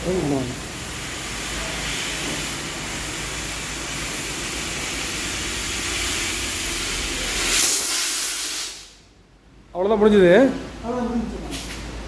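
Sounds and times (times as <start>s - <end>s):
compressed air hissing: 0.0s - 9.0s.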